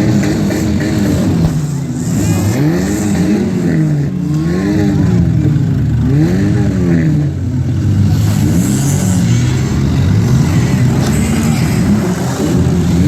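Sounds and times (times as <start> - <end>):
car engines revving: 0.0 - 13.0.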